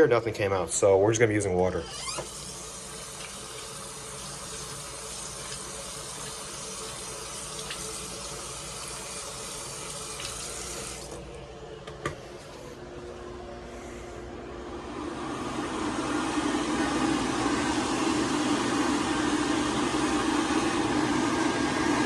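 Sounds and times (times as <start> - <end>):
faucet running water: 1.9 - 11.2.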